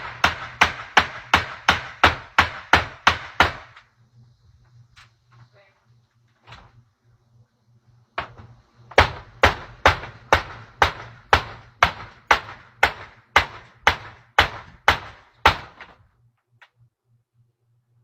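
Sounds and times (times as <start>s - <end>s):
hammer striking screen door: 0.0s - 3.8s, 8.2s - 16.0s.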